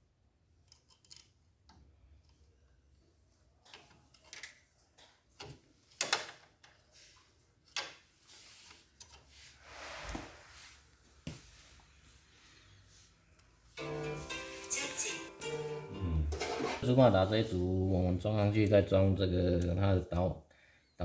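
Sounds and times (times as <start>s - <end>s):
clicks and knocks of parts: 0.6s - 2.4s, 3.6s - 6.8s.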